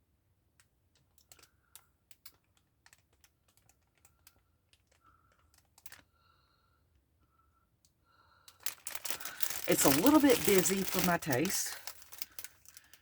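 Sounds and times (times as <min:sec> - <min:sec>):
faint plastic clicks and ticks: 0:00.0 - 0:13.0.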